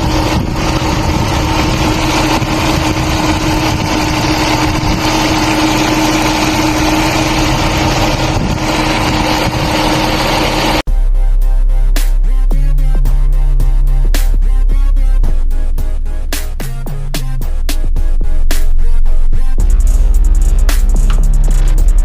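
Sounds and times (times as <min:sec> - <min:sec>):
car engine running: 0:00.0 - 0:10.9, 0:12.5 - 0:22.0
steady tone: 0:00.0 - 0:16.8.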